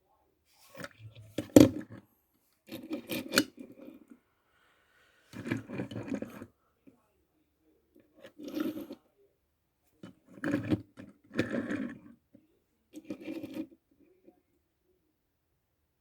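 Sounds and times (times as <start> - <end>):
toy cars rubbing and scraping: 5.3 - 6.5, 8.2 - 9.0, 10.2 - 12.1, 13.0 - 13.7.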